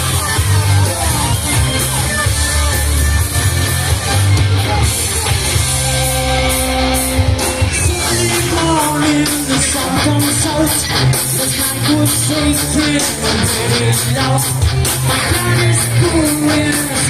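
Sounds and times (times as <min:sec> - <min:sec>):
electric guitar: 0:00.0 - 0:17.0
hard rock band playing: 0:00.0 - 0:17.0.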